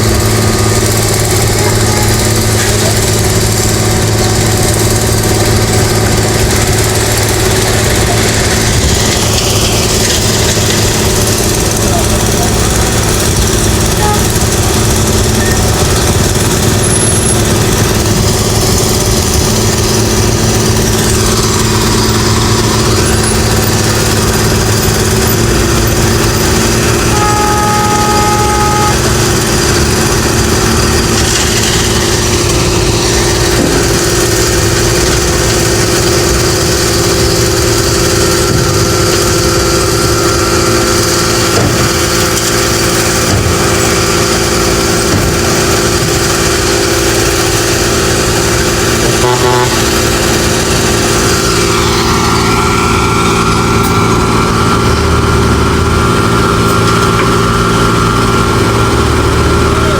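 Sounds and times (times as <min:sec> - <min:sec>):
construction machinery engine running: 0:00.0 - 0:59.9
short steady tone: 0:27.0 - 0:29.3.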